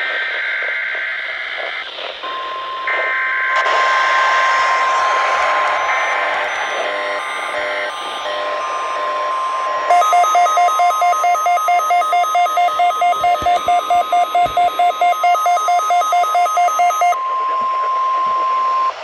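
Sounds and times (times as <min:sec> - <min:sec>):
steady loud alarm tone: 0:02.4 - 0:19.0
lower-pitched beeps: 0:05.2 - 0:19.0.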